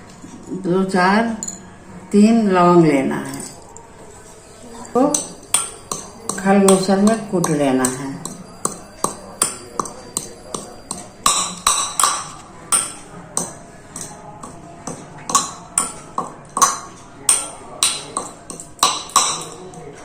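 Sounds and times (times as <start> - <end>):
pestle pounding in mortar: 5.1 - 19.5.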